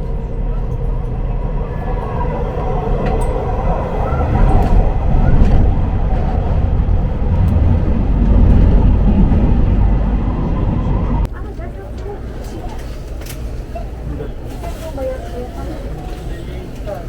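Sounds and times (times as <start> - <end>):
train carriage rumbling on rails: 0.0 - 17.0.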